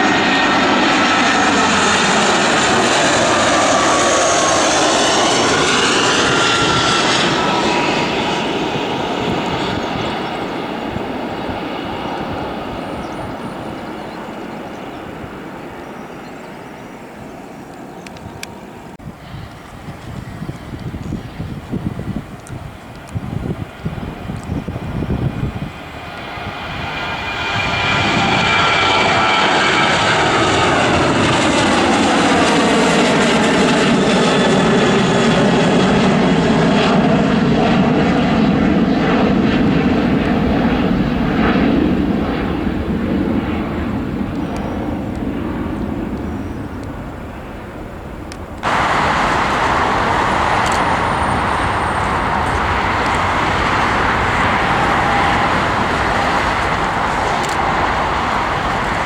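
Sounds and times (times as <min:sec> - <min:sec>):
airliner engines passing: 0:00.0 - 0:59.0
steady rushing noise: 0:48.4 - 0:59.0.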